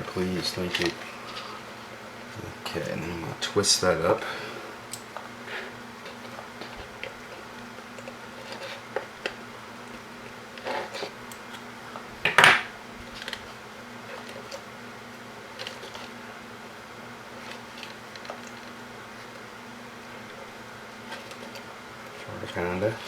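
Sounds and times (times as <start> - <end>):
steady low hum: 0.0 - 23.0
clicks and scrapes of wire and tools: 4.9 - 12.1.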